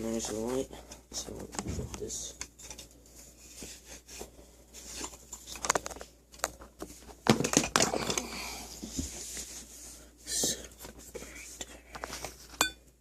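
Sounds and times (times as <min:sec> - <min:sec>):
objects clattering: 0:04.8 - 0:09.2
objects clicking and knocking: 0:05.0 - 0:08.4.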